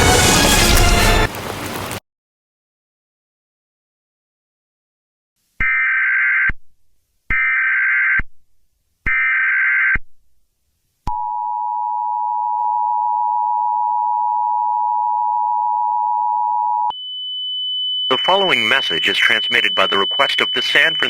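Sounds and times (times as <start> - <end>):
two-tone attention signal: 18.0 - 21.0.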